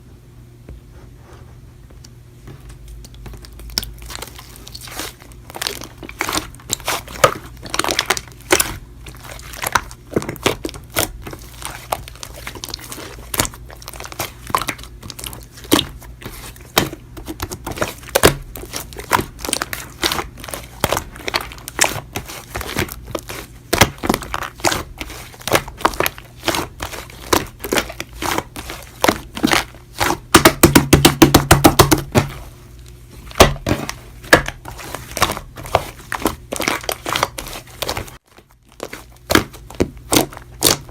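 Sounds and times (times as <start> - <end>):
slime squeezed by hand: 3.4 - 30.4.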